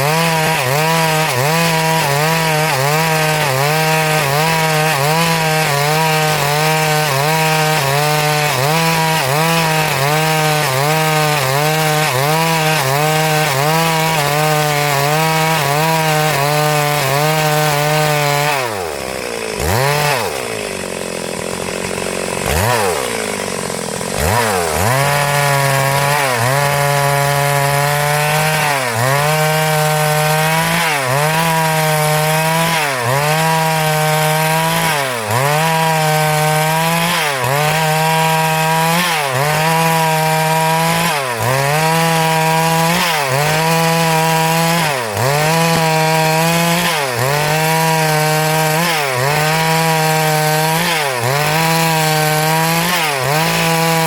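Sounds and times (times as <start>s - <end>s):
chainsaw cutting log: 0.0s - 54.0s.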